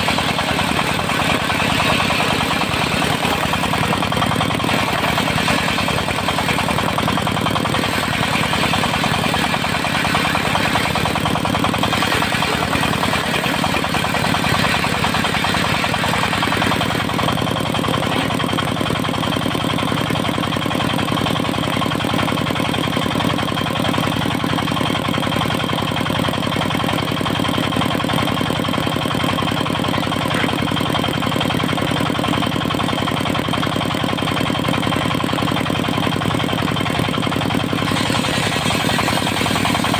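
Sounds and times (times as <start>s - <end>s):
stationary engine running: 0.0s - 39.9s.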